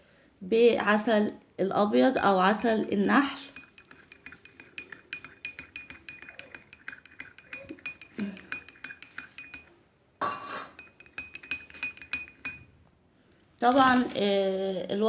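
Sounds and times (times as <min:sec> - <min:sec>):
spoon clinking in glass: 0:02.5 - 0:12.8.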